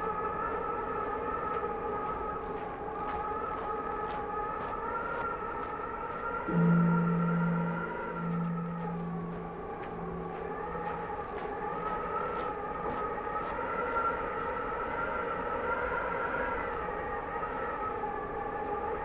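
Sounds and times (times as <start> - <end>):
faint footsteps: 0.0 - 14.8
wind howling: 0.0 - 19.0.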